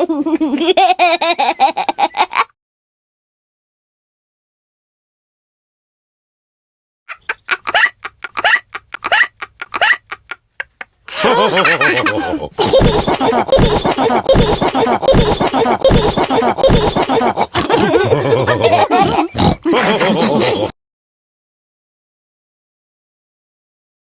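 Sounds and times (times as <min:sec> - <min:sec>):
cartoon voices laughing: 0:07.1 - 0:20.7
cartoon pig hiccuping: 0:13.5 - 0:20.7.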